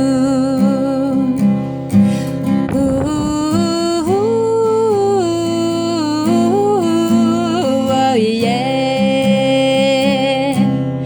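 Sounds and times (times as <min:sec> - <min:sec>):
guitar: 0:00.0 - 0:11.0
person singing without words: 0:02.6 - 0:10.7.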